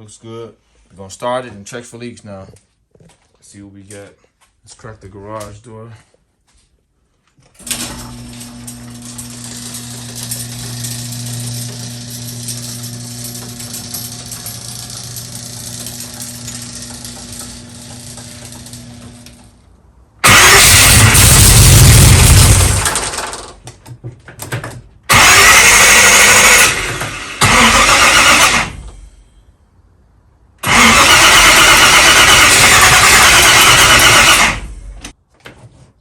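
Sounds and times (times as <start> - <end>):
garage door opener humming: 7.6 - 23.4
engine cranking: 20.2 - 23.6, 25.1 - 28.9, 30.6 - 35.0.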